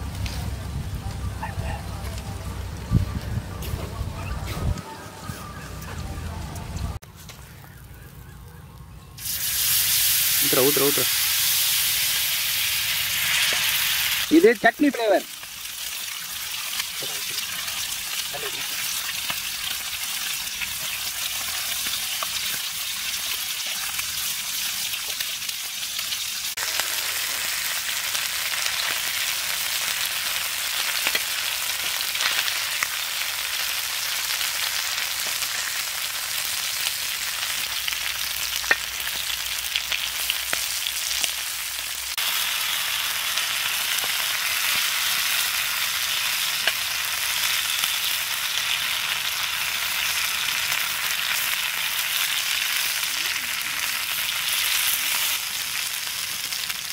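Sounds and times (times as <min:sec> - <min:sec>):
meat sizzling in a pan: 0:09.2 - 0:56.9.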